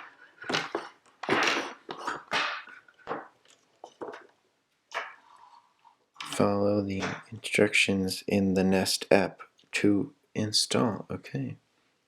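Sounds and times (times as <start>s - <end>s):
plastic parts knocking and scraping: 0.0s - 5.3s.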